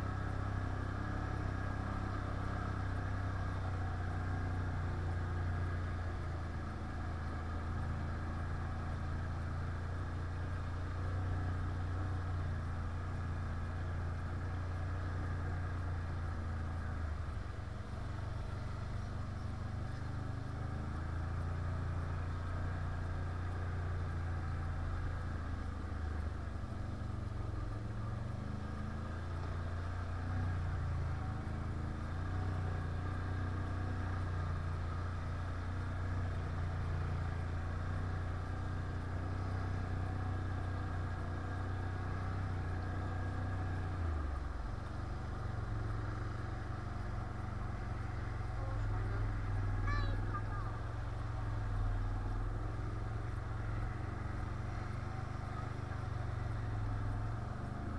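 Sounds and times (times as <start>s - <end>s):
quad engine running: 0.0s - 57.9s.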